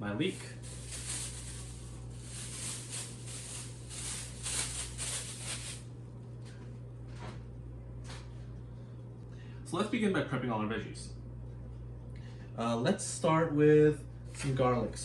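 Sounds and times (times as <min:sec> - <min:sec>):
steady low hum: 0:00.0 - 0:15.0
rustling handling noises: 0:00.3 - 0:07.4.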